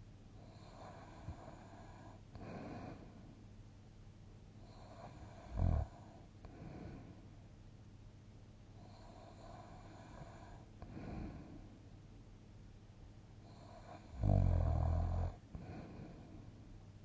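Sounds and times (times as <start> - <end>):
person breathing softly: 0.4 - 3.5, 4.6 - 7.4, 8.7 - 12.0, 15.3 - 16.8
loud low snore: 4.7 - 7.0, 13.5 - 16.2.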